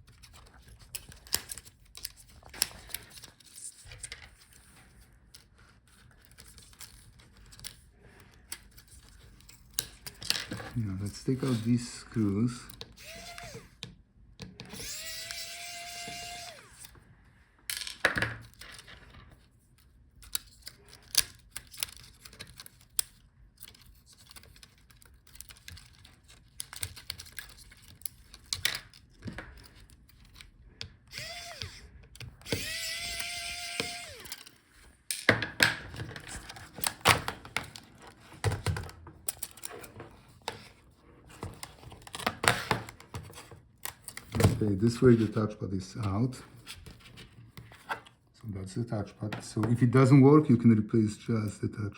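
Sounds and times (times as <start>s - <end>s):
electric screwdriver whining: 13.0s - 13.8s, 14.6s - 17.0s, 31.1s - 34.6s.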